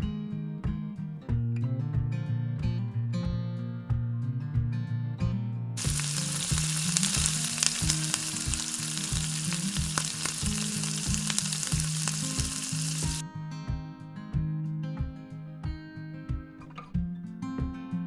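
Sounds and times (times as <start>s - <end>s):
guitar background music: 0.0s - 18.0s
food frying in hot oil: 5.8s - 13.2s.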